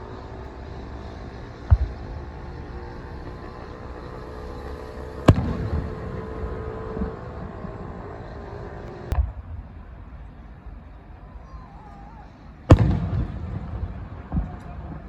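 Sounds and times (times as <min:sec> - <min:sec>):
steady low hum: 0:00.0 - 0:15.0
fireworks booming: 0:01.4 - 0:08.1, 0:12.7 - 0:15.0.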